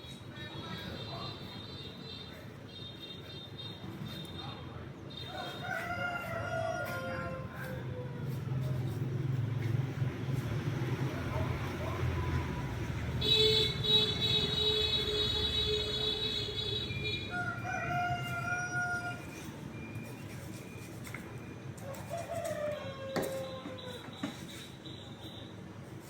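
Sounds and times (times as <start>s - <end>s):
rooster crowing: 5.3s - 8.4s, 17.3s - 19.4s, 21.8s - 24.2s.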